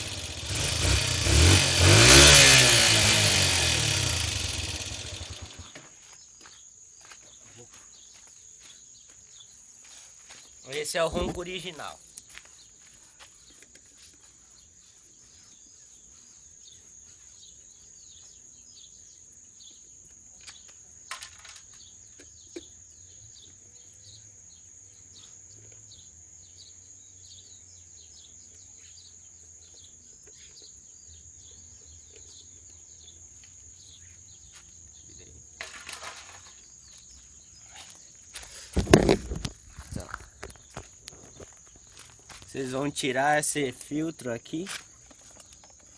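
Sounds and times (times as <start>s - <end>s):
short insect chirps: 14.9s - 45.9s.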